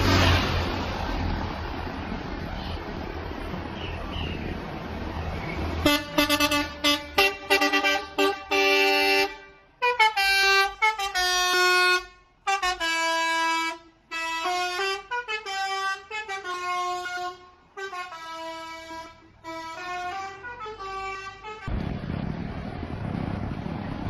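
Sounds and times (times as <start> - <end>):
multi-tone air horn tune: 5.8 - 21.7.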